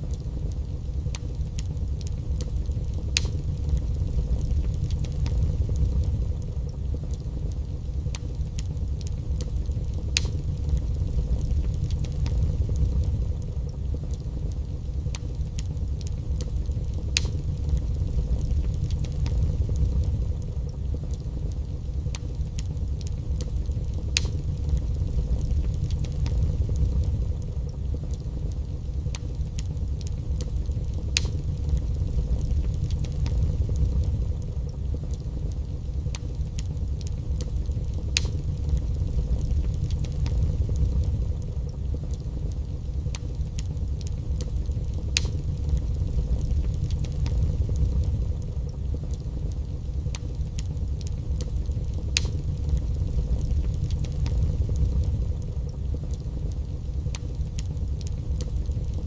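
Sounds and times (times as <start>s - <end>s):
fire crackling and popping: 0.0s - 59.0s
fire flames rumbling: 0.0s - 59.0s.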